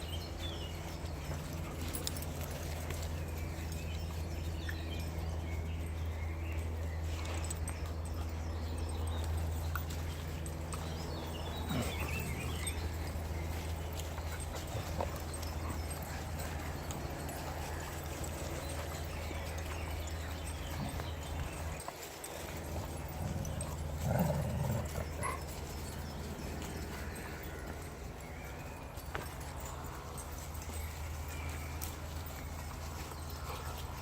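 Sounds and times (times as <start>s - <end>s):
dogs scuffling with sticks: 0.0s - 34.0s
dog whining: 23.3s - 25.5s.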